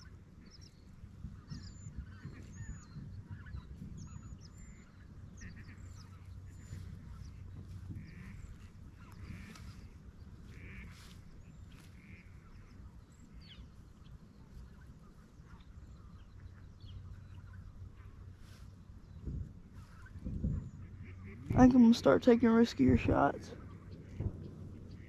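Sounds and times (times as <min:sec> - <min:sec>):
low rumble: 0:00.0 - 0:25.0
ducks quacking: 0:01.4 - 0:13.5, 0:19.7 - 0:24.3.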